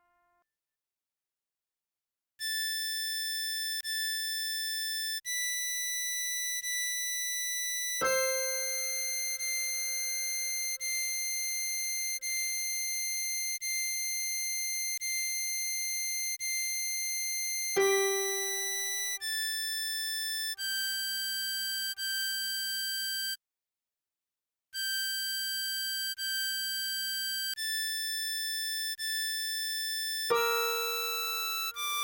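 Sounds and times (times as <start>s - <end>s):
synthesized harmonica melody: 8.0s - 14.1s, 17.8s - 22.6s, 30.3s - 32.0s.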